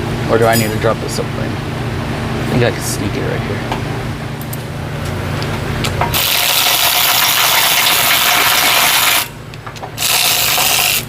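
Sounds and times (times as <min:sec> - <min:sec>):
pneumatic hand tool running: 0:06.1 - 0:09.3, 0:10.0 - 0:11.0.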